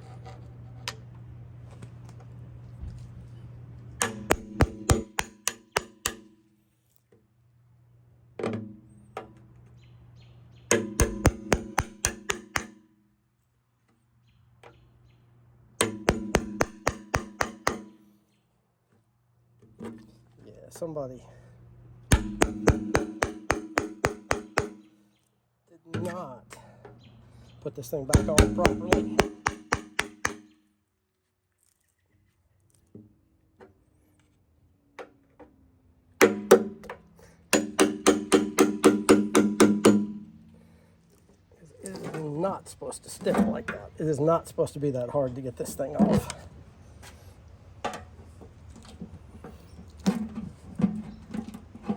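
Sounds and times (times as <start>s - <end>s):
hammer striking metal: 4.0s - 6.5s, 10.7s - 13.0s, 15.8s - 18.2s, 22.1s - 25.0s, 28.1s - 30.6s, 36.2s - 36.9s, 37.5s - 40.4s.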